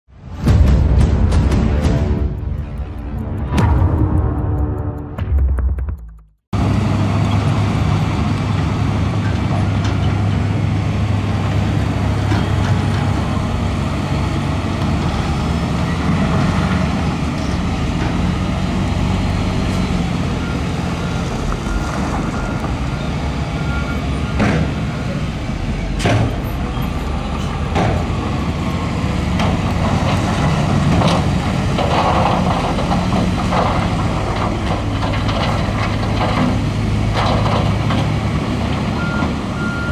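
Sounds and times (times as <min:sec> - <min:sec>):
diesel engine of heavy machinery: 0:06.6 - 0:39.9.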